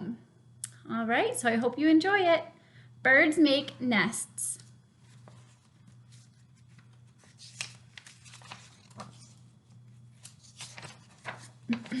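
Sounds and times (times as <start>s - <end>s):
low steady hum: 0.0s - 12.0s
paper pages rustling: 5.0s - 12.0s.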